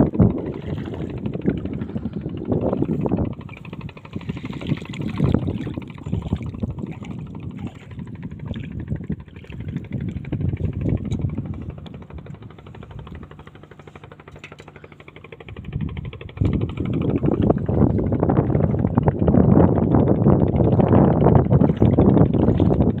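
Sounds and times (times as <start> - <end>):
boat engine chugging: 0.0 - 23.0
water splashing: 0.1 - 2.0, 3.4 - 13.2, 21.5 - 23.0.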